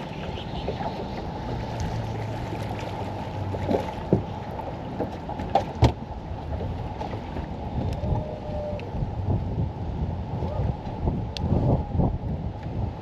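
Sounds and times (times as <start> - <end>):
boat engine low rumble: 0.0 - 13.0
sharp knocks on boat: 3.5 - 7.5.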